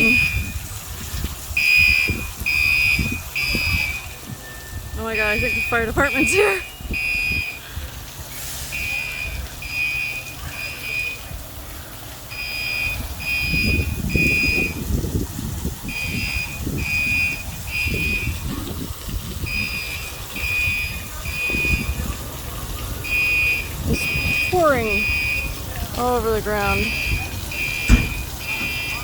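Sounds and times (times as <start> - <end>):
fire alarm beeping: 0.0 - 0.6, 1.6 - 7.6, 8.7 - 11.4, 12.3 - 14.8, 15.8 - 18.4, 19.4 - 22.1, 23.0 - 29.0.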